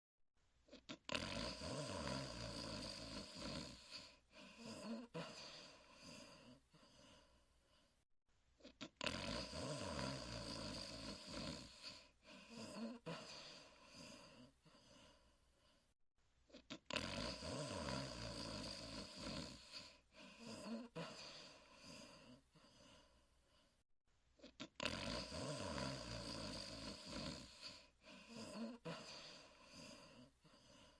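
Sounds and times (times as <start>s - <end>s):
person snoring: 0.7s - 8.0s, 8.6s - 15.9s, 16.5s - 23.8s, 24.4s - 30.9s
faint breath: 2.5s - 8.0s, 10.6s - 16.0s, 18.4s - 23.8s, 26.4s - 30.9s.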